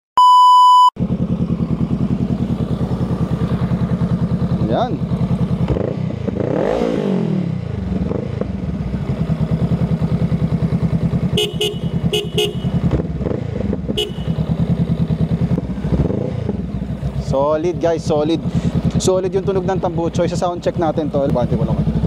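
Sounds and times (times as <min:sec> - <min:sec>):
horn beeps: 0:00.2 - 0:01.0, 0:11.4 - 0:12.9, 0:14.0 - 0:14.5
motorcycle engine idling: 0:01.0 - 0:06.4, 0:07.6 - 0:22.0.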